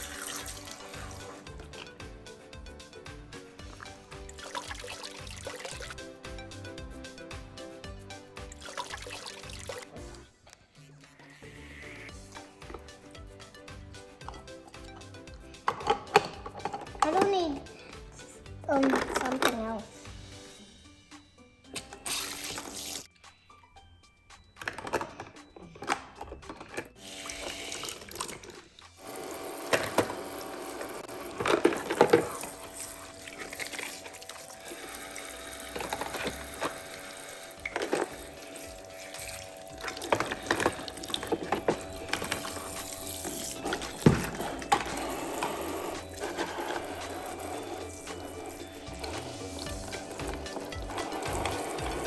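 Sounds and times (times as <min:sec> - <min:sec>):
water running into basin: 0:00.0 - 0:02.0, 0:03.6 - 0:06.0, 0:08.4 - 0:10.2, 0:22.0 - 0:23.1, 0:27.0 - 0:52.0
toy pump running: 0:00.0 - 0:02.1, 0:03.8 - 0:06.0, 0:21.8 - 0:23.1, 0:26.2 - 0:52.0
plastic dishes knocking: 0:15.6 - 0:17.4, 0:24.6 - 0:26.9, 0:31.3 - 0:32.6, 0:39.8 - 0:42.8, 0:43.5 - 0:47.6.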